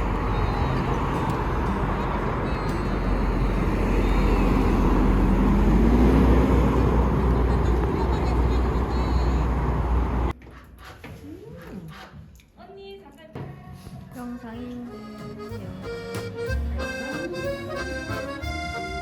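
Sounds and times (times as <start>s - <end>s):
low traffic rumble: 0.0s - 10.4s
faint background voices: 11.1s - 19.0s.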